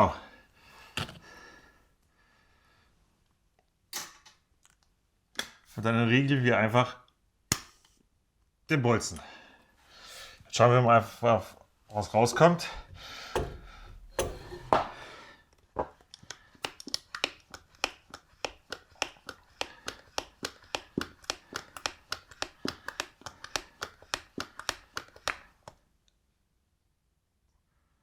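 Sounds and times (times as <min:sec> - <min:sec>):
louder knocks: 0:13.4 - 0:15.0.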